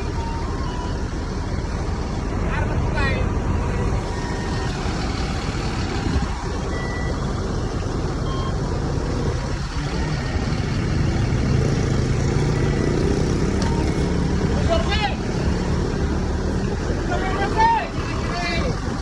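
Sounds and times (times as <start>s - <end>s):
bus diesel engine drone: 0.0s - 19.0s
traffic noise: 0.0s - 19.0s
faint beeps: 6.6s - 7.3s.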